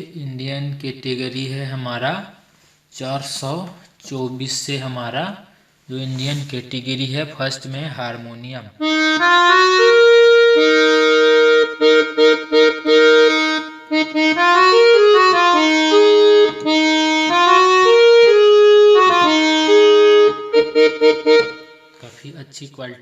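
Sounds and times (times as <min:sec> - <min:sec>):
keyboard harmonium melody: 0:08.8 - 0:22.2.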